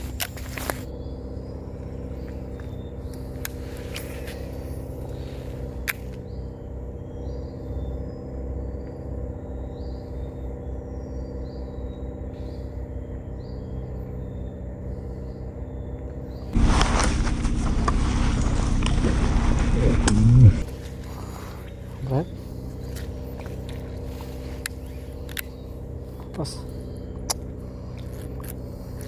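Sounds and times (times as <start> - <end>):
steady low hum: 0.0 - 29.0
sharp clicks: 24.6 - 25.6.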